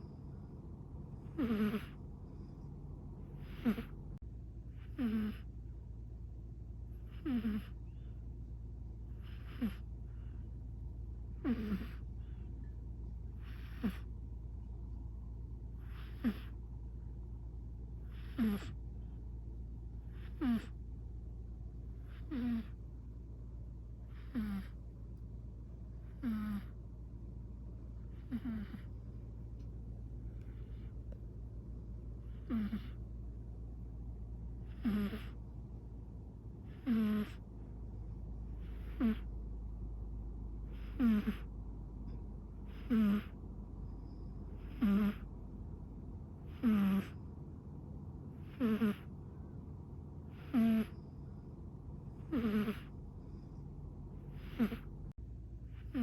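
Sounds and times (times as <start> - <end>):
faint breaths: 0.0 - 5.8, 6.8 - 47.3, 48.2 - 56.0
steady low hum: 0.0 - 56.0
cat snoring: 1.2 - 2.6, 3.2 - 5.6, 6.9 - 8.2, 9.0 - 10.4, 11.3 - 12.4, 13.3 - 14.2, 15.7 - 16.6, 18.0 - 19.1, 20.0 - 20.8, 21.9 - 22.8, 24.0 - 24.8, 25.9 - 26.8, 28.0 - 29.0, 32.2 - 33.1, 34.6 - 35.4, 36.6 - 37.4, 38.5 - 39.4, 40.6 - 41.5, 42.6 - 43.4, 44.0 - 45.3, 46.4 - 47.3, 48.3 - 49.1, 50.2 - 51.2, 52.0 - 53.6, 54.2 - 56.0.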